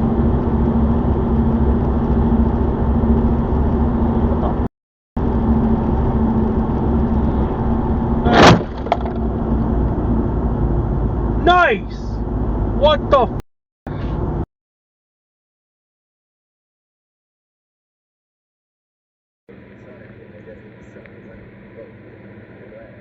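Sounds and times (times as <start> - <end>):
car engine and road noise: 0.0 - 14.5, 19.5 - 23.0
loud sudden sound: 8.2 - 9.2.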